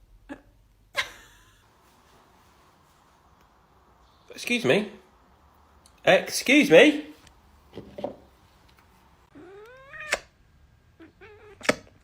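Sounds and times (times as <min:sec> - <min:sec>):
cat meowing: 0:09.3 - 0:10.3, 0:11.0 - 0:11.7.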